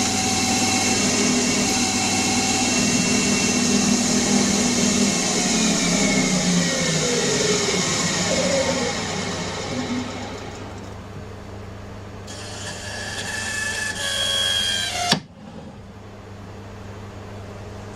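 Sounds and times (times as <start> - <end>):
lathe machine running: 0.0 - 11.2
whine falling in pitch: 1.8 - 11.0.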